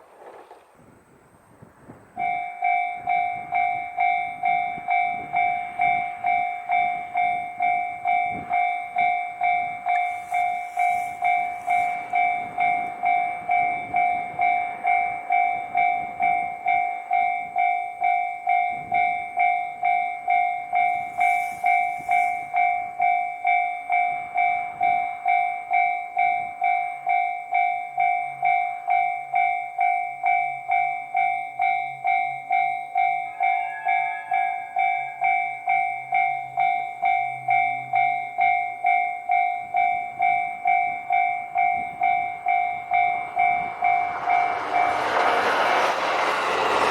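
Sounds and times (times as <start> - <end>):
wheels clicking on rail joints: 0.0 - 1.0, 38.4 - 46.9
diesel train rattling: 1.9 - 25.4, 39.3 - 46.9
level-crossing alarm bell ringing: 2.2 - 46.9.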